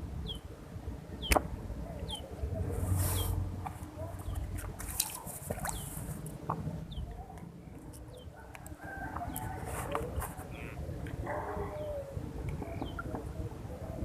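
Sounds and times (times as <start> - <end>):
chickens clucking: 8.0 - 14.0.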